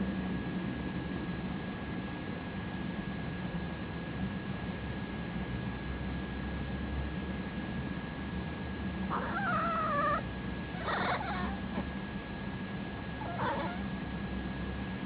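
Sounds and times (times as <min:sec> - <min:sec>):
cat wavering calls: 0:09.1 - 0:12.0, 0:13.0 - 0:14.1.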